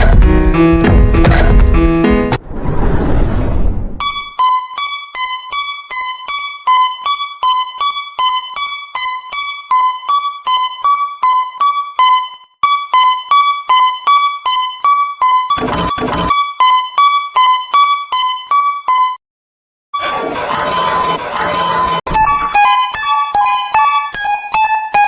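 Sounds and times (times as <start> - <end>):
rushing noise: 2.3 - 4.2.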